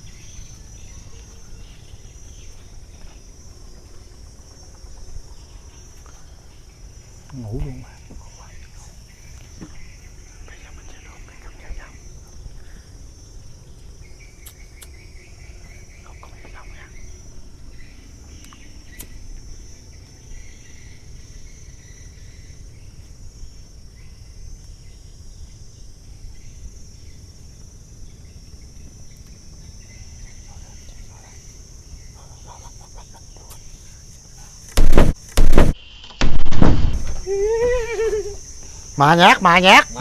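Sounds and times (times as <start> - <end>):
crickets chirring: 0.0 - 40.0
firecracker blasts: 34.8 - 37.3
startled cry: 37.1 - 40.0.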